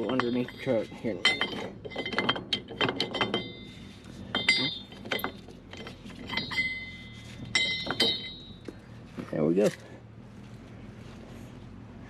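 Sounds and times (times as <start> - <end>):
metal tools clinking: 0.0 - 8.8.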